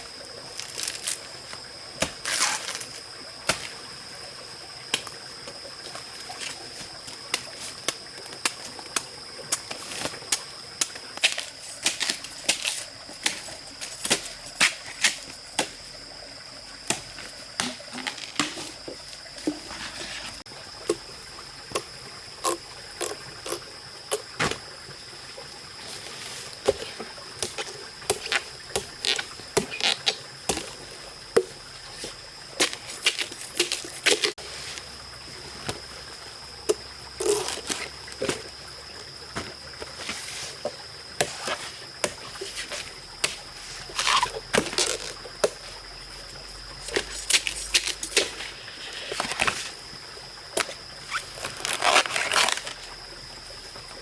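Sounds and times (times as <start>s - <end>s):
water sloshing and trickling: 0.0s - 54.0s.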